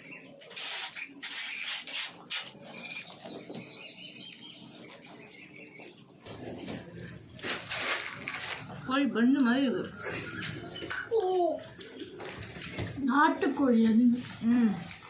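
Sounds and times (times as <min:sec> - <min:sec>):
small birds chirping: 0:00.0 - 0:15.0
rustling and clattering: 0:00.6 - 0:08.9.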